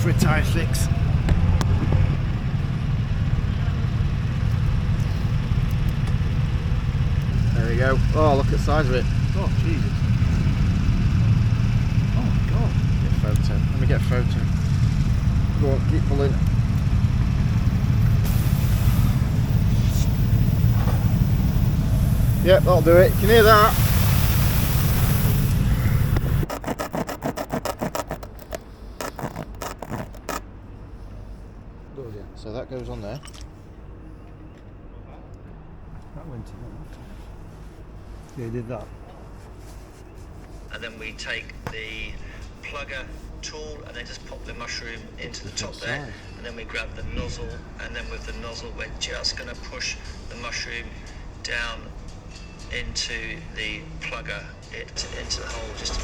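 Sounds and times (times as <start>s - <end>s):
low engine rumble: 0.0s - 26.6s, 27.9s - 56.0s
air hissing out of a tyre: 18.2s - 26.5s
sharp clicks: 26.1s - 30.4s
tool rasping in puncture hole: 26.1s - 30.4s.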